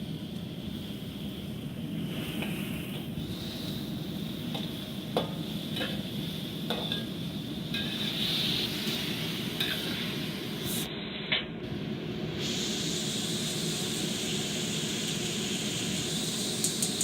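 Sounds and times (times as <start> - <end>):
food sizzling in oil: 2.1 - 10.4, 12.4 - 17.0
utensil scraping and clinking wok: 6.7 - 8.4.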